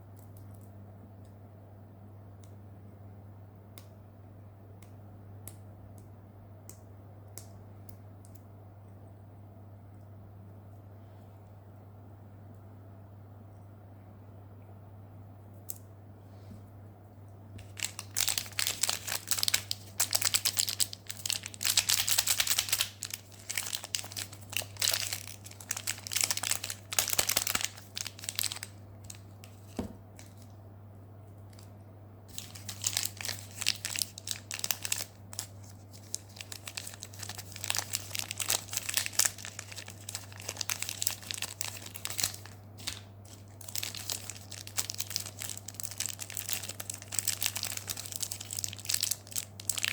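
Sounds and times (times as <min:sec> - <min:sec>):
low steady hum: 0:00.0 - 0:49.9
candy wrappers crinkling: 0:17.6 - 0:30.6, 0:31.4 - 0:49.9.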